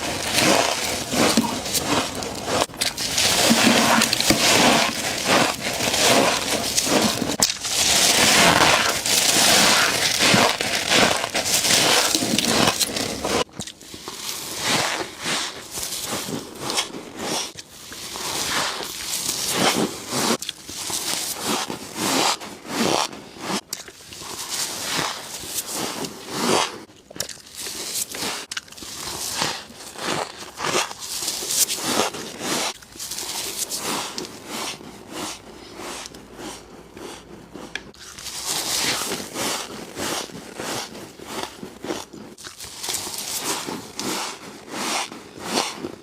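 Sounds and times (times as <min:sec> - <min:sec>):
crunching frost between teeth: 0:00.0 - 0:15.0, 0:27.0 - 0:46.0.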